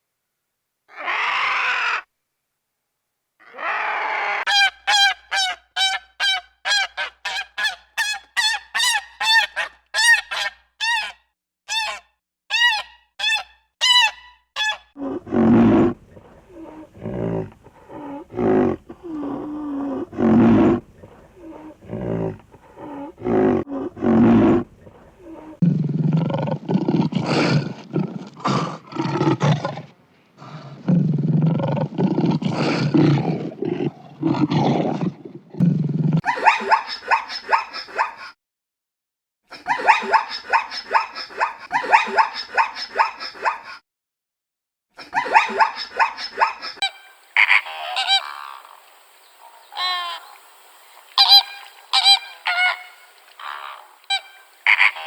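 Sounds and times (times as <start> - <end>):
animal calls: 0.9 - 2.1, 45.0 - 55.0.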